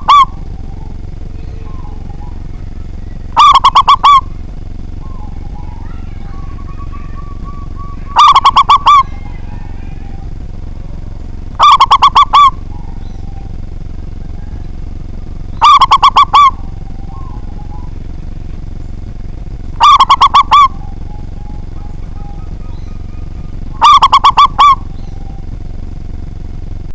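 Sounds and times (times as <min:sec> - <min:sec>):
dove cooing: 0:00.0 - 0:26.9
steady low hum: 0:00.0 - 0:26.9.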